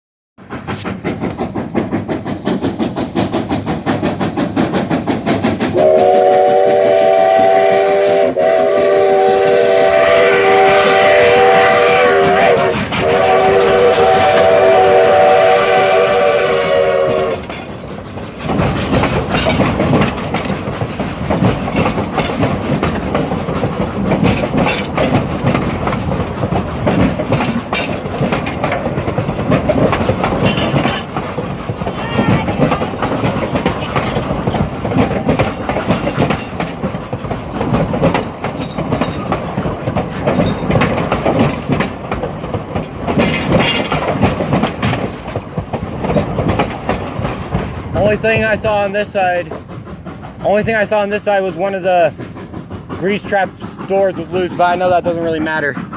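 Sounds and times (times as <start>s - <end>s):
train wheels clicking over rail joints: 0.4s - 55.9s
train whistle chord: 5.8s - 17.4s.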